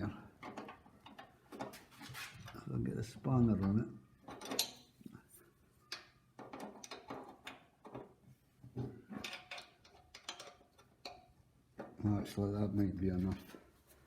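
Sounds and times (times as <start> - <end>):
spanner clicking and scraping on bolt: 0.0 - 2.6, 3.5 - 5.0, 5.8 - 8.2, 9.1 - 12.0.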